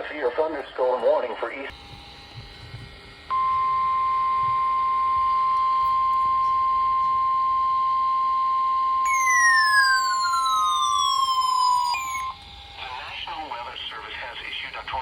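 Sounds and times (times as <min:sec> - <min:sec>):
steady loud warning tone: 0:01.7 - 0:14.0
siren-like tone sliding down: 0:09.0 - 0:12.4.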